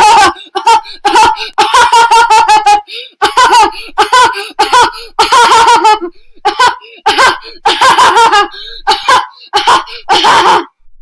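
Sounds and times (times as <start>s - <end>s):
high-pitched laughing: 0.0s - 8.5s.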